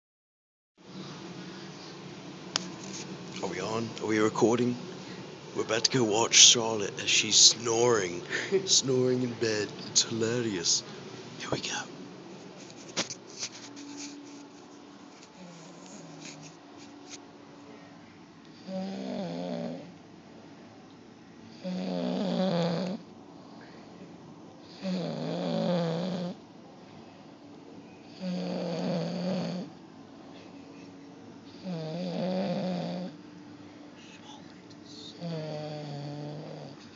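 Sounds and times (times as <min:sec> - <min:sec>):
quiet breathing: 0:00.9 - 0:02.2, 0:04.9 - 0:05.4, 0:23.3 - 0:25.0, 0:33.4 - 0:36.9
person snoring: 0:21.6 - 0:23.0, 0:24.7 - 0:26.4, 0:28.2 - 0:29.8, 0:31.6 - 0:33.2, 0:35.0 - 0:36.9.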